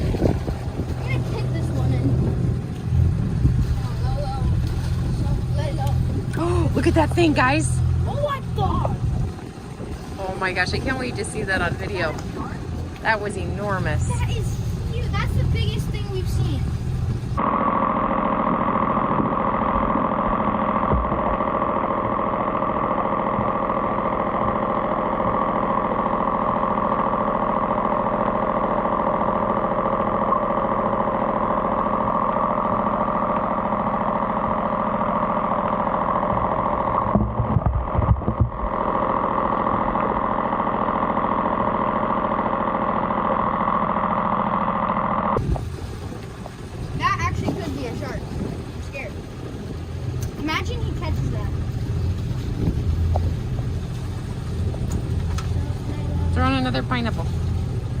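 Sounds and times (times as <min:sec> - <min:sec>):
engine idling hum: 0:00.0 - 0:58.0
low thumps: 0:19.0 - 0:22.2, 0:36.2 - 0:40.4.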